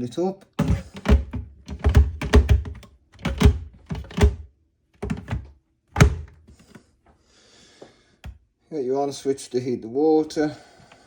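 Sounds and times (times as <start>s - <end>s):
plastic water tank knocking: 0.6s - 6.4s.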